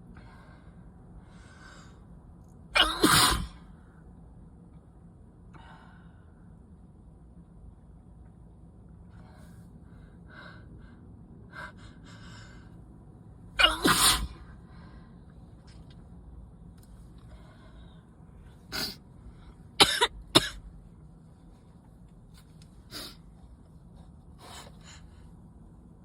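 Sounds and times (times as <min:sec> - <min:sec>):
person sneezing: 0:02.8 - 0:03.6, 0:13.6 - 0:14.4.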